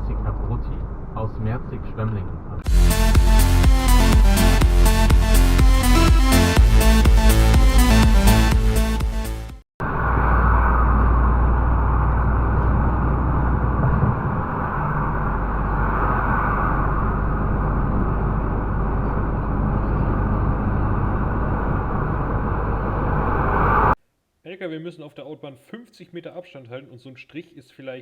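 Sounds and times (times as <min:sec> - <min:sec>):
road and wind noise: 0:00.0 - 0:02.6, 0:09.8 - 0:24.0
diesel engine rumble: 0:02.5 - 0:24.0.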